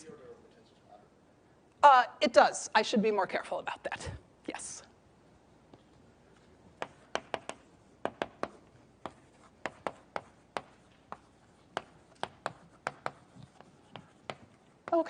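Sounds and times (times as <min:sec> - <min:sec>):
writing taps on a board: 0:06.8 - 0:15.0.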